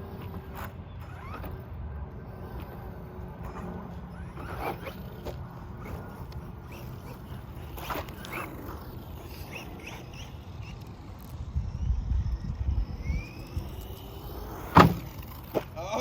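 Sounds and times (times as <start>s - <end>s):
wind on microphone: 10.6s - 14.9s.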